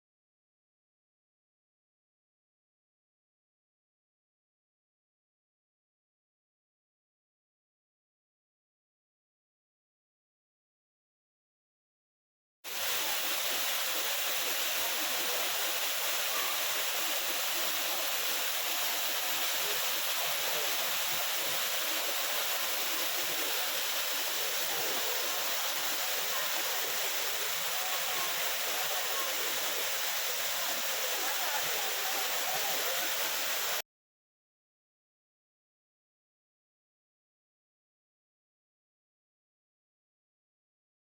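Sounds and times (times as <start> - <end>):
waterfall rushing: 12.7 - 33.8.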